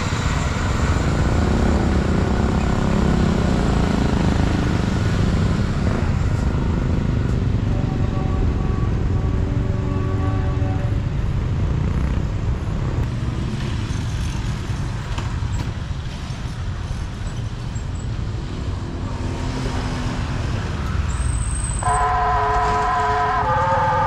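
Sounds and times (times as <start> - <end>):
road traffic rumble: 0.0 - 24.0
crossing warning siren wailing: 20.8 - 24.0.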